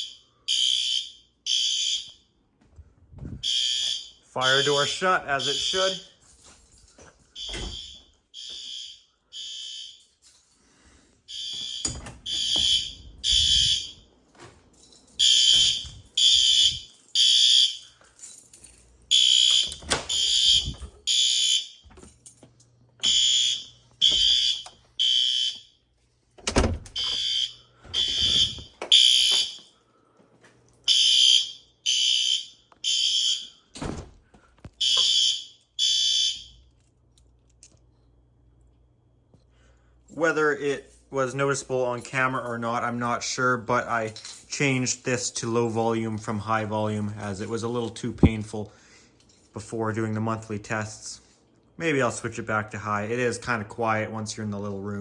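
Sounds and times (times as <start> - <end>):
fire alarm horn blasts: 0.0 - 2.3, 3.4 - 6.2, 7.4 - 10.2, 11.3 - 14.1, 15.2 - 17.9, 19.1 - 21.9, 23.0 - 25.8, 27.0 - 29.8, 30.9 - 33.7, 34.8 - 36.7.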